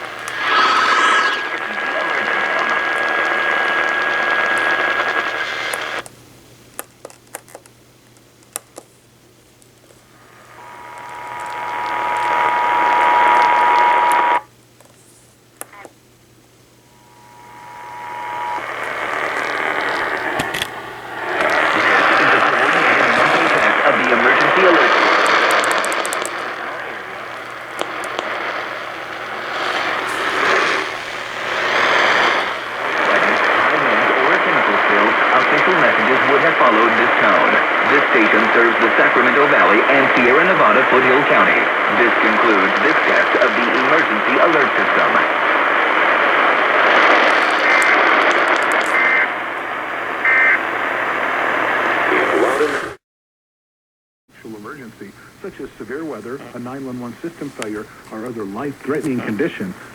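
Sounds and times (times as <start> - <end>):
radio hiss: 0.0 - 6.4, 9.8 - 53.0, 54.3 - 59.9
faint hum: 0.0 - 53.0, 54.3 - 59.9
steady whistle-like tone: 16.8 - 19.4
small clicks: 47.1 - 49.1.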